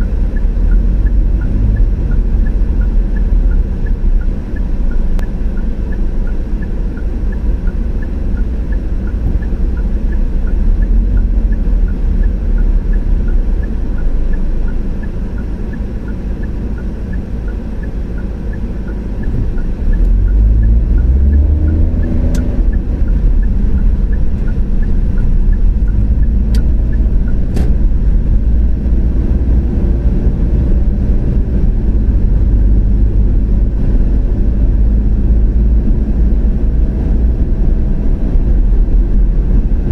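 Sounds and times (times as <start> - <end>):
faint regular ticking: 0.0 - 29.2
car engine and tyres rumbling: 0.0 - 39.9.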